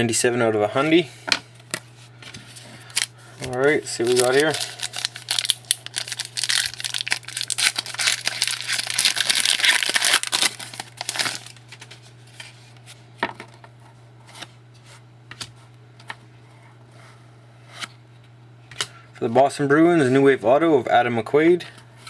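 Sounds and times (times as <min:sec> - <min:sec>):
wrapper tearing and crinkling: 0:02.9 - 0:12.0.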